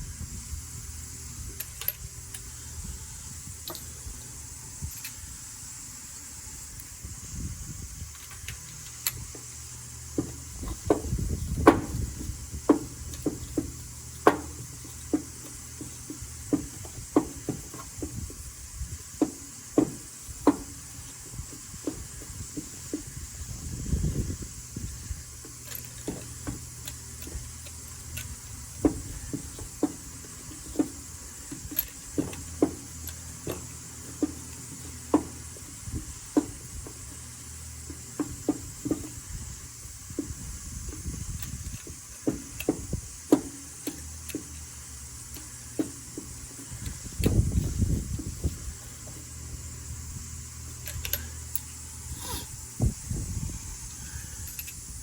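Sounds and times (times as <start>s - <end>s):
steady low hum: 0.0s - 55.0s
hand tools clicking and knocking: 3.6s - 4.0s, 8.2s - 18.4s, 19.0s - 23.6s, 25.2s - 49.8s, 50.5s - 52.6s.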